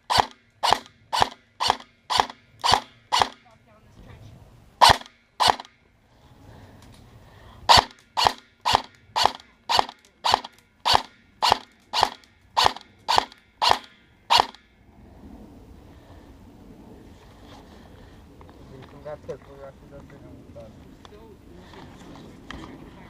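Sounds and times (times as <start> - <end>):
airsoft gun shots: 0.0 - 3.4, 4.8 - 5.8, 7.7 - 14.7.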